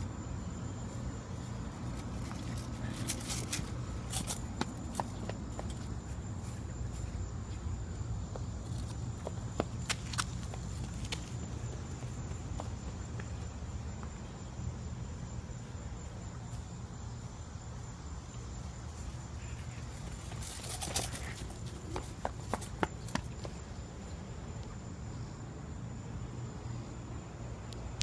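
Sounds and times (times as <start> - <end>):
footsteps on rough ground: 1.4 - 7.7, 8.3 - 14.1, 19.8 - 23.7.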